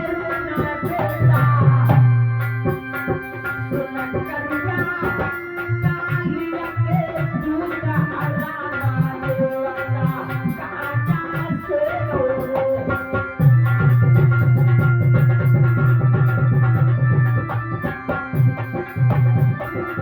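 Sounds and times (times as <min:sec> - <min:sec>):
hand drum rhythm: 0:00.0 - 0:20.0
held melody notes: 0:00.0 - 0:20.0.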